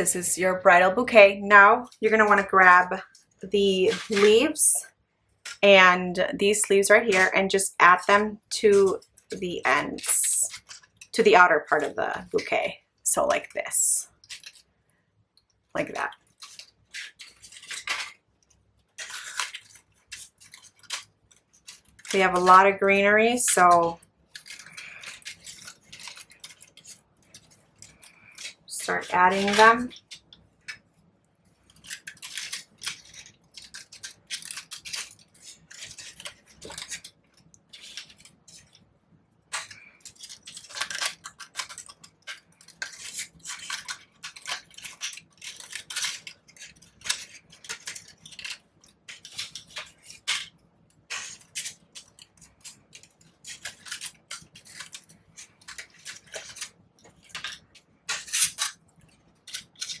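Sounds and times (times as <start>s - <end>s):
paper flowers rustling: 0.0s - 4.8s, 15.8s - 30.9s, 31.5s - 38.8s, 39.5s - 60.0s.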